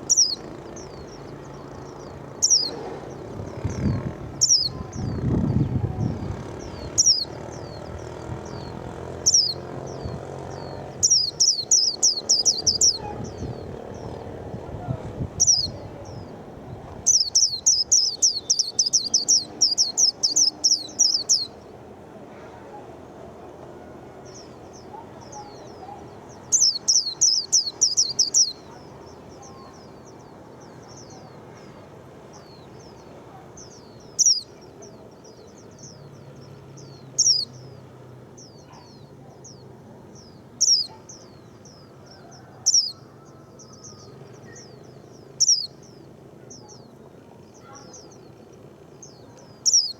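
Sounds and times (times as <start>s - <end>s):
bird singing high trills: 0.0s - 16.4s, 17.0s - 21.7s, 24.3s - 28.8s, 33.7s - 34.9s, 36.9s - 37.6s, 40.6s - 44.8s, 45.4s - 46.0s, 49.0s - 49.9s
thin bird chirps: 0.1s - 5.9s, 33.3s - 34.8s, 37.2s - 37.6s, 49.0s - 49.9s.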